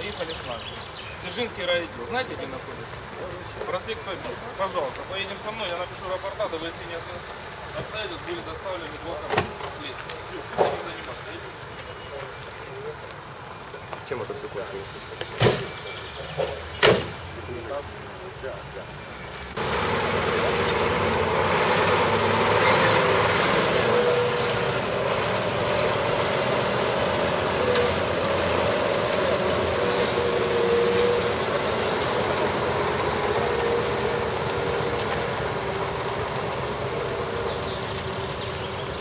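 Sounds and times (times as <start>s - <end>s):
large engine droning: 19.6s - 39.0s.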